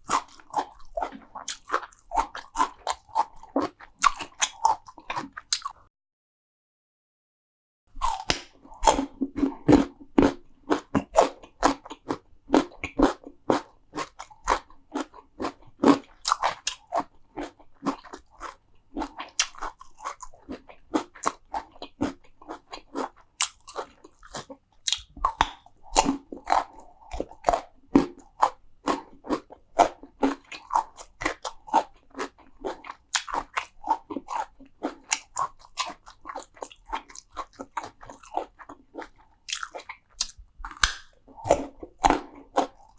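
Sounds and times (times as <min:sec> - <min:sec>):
crunchy food chewing: 0:00.0 - 0:05.8, 0:08.0 - 0:42.9.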